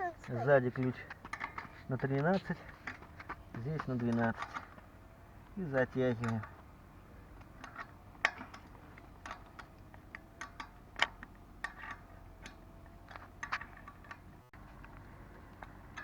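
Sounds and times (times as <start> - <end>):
metallic clicks and taps of spanners: 0.2 - 6.6.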